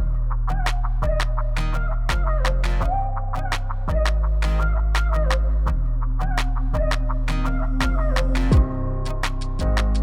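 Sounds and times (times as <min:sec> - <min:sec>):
electronic music with heavy bass: 0:00.0 - 0:10.0.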